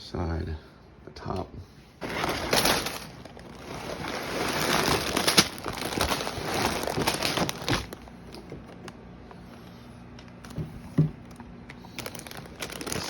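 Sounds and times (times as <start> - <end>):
packaging crinkling and rustling: 2.0 - 9.1, 10.1 - 13.0.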